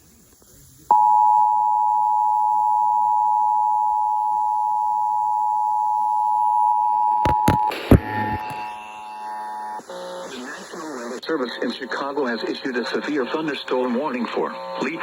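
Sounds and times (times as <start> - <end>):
two-tone alert signal: 0.9 - 10.0.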